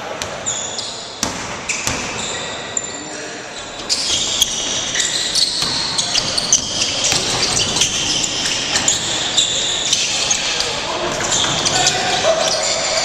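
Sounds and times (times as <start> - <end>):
players' voices: 0.0 - 13.0
sneaker squeaks: 0.1 - 13.0
basketball bouncing on court: 1.2 - 2.4, 4.1 - 9.2.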